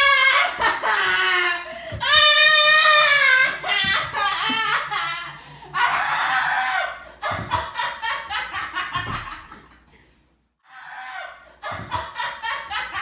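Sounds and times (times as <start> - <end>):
person laughing: 3.4 - 6.2.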